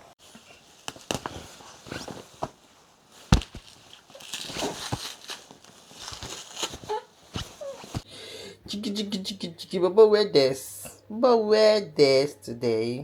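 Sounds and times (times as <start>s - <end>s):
handling knocks and rustling: 0.2s - 8.1s.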